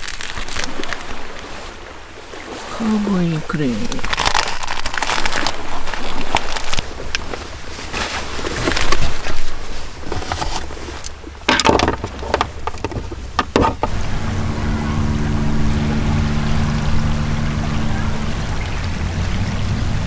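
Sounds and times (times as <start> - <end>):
plastic packaging crinkling and tearing: 0.0 - 1.0, 3.9 - 11.0
steady low hum: 13.9 - 20.0.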